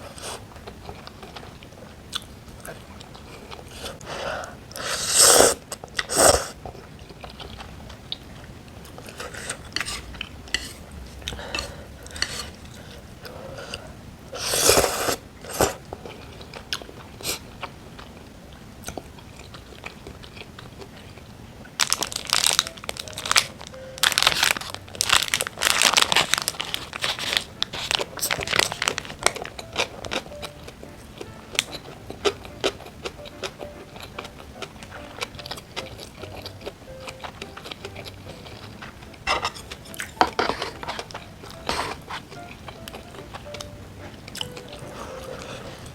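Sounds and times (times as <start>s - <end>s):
crunchy bites and chewing: 18.9s - 30.5s.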